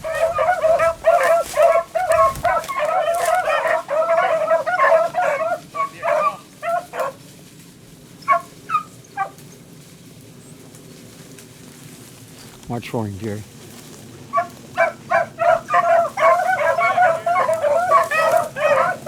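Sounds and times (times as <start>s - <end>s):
dogs baying: 0.0s - 7.3s, 8.1s - 9.5s, 14.2s - 19.0s.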